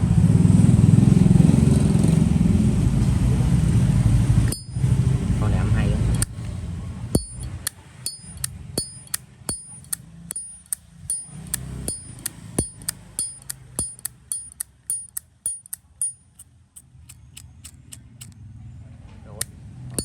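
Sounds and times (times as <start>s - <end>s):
lighter lid clicking open and shut: 17.1s - 18.4s.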